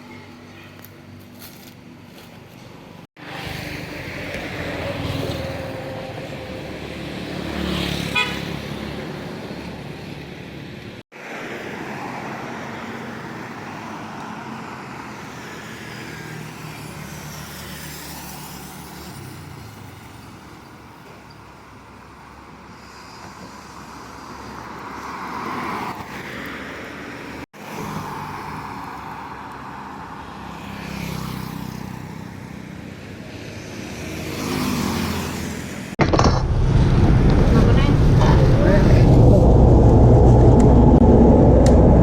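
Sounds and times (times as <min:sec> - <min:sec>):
vehicles passing: 0:00.1 - 0:42.0
car horn toot: 0:08.1 - 0:08.5.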